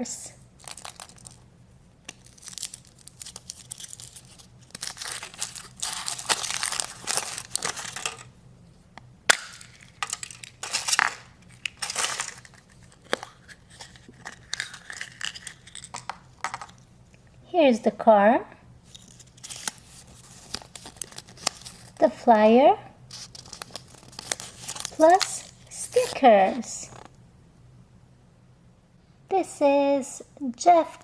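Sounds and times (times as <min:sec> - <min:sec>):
foil wrapper crinkling and tearing: 0:00.6 - 0:01.4, 0:02.1 - 0:08.3, 0:09.3 - 0:16.8, 0:18.8 - 0:22.0, 0:23.1 - 0:26.2.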